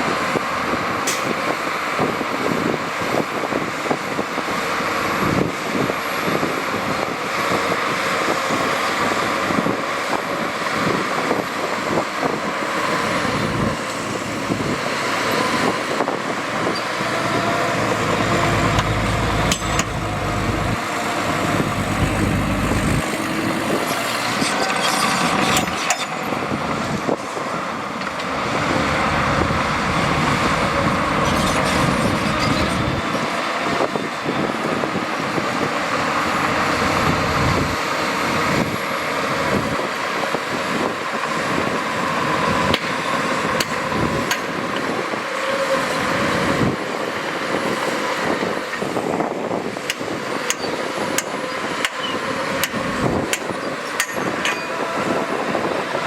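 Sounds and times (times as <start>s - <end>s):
diesel machinery running: 0.0s - 56.0s
metal knocks and clanks: 18.4s - 20.8s.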